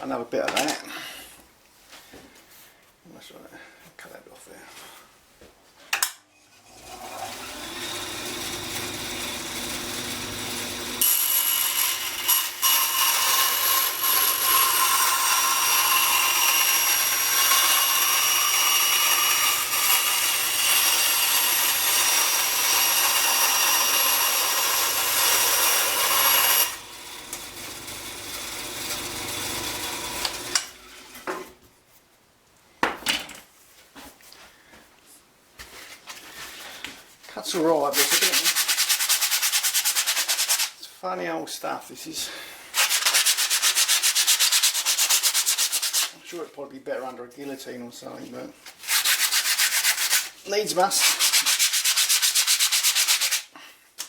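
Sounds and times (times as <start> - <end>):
table saw running: 6.8 - 30.7
saw blade cutting with high whine: 7.3 - 30.6.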